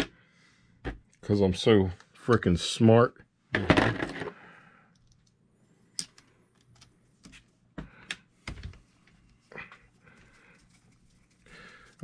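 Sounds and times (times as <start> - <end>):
small parts and tools clicking: 4.9 - 6.9.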